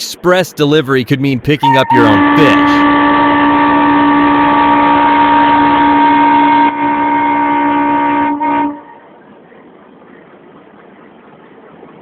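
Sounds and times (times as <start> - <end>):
train horn blast: 1.6 - 9.2.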